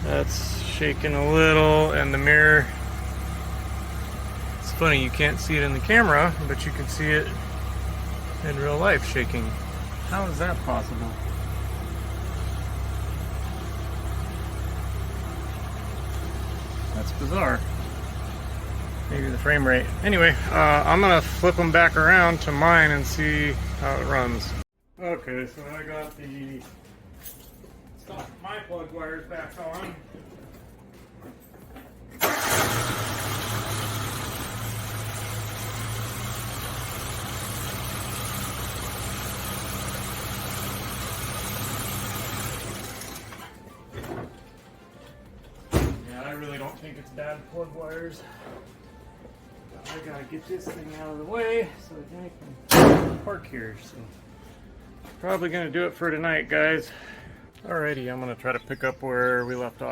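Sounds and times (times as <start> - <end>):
car engine idling: 0.0 - 24.6, 32.2 - 43.5.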